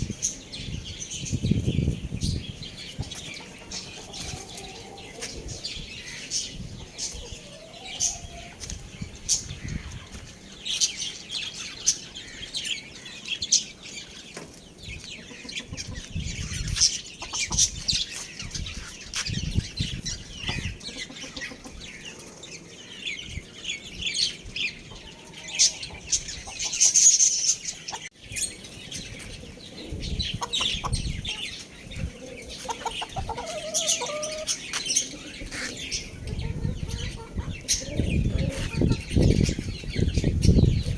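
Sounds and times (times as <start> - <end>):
chickens clucking: 1.5 - 12.5, 14.3 - 40.9
high-pitched chick chirps: 24.3 - 40.9.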